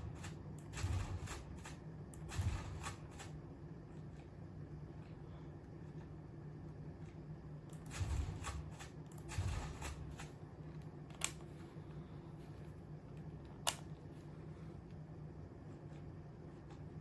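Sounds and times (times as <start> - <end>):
sharp single clicks: 13.6 - 13.9.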